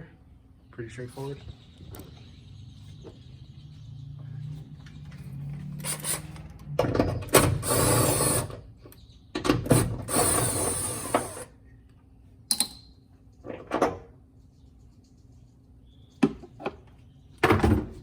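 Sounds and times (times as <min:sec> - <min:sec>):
battery ratchet running: 0:07.5 - 0:08.5, 0:10.0 - 0:11.5.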